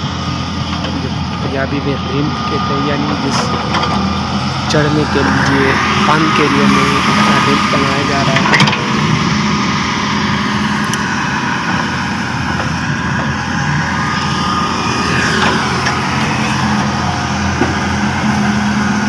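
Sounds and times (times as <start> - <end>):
diesel engine running: 0.0 - 19.0.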